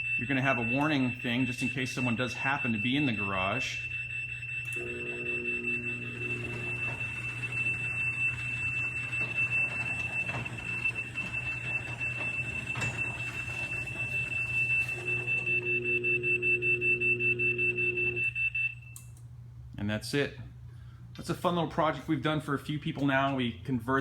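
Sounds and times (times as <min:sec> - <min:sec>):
high-pitched warning beeper: 0:00.0 - 0:18.8
low motor hum: 0:04.7 - 0:18.3.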